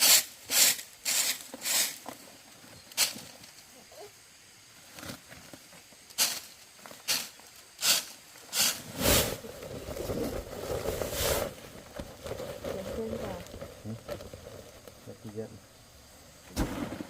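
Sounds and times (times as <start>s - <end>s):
rough rustling noise: 4.6s - 15.6s
hissing scraping strokes: 6.2s - 11.7s.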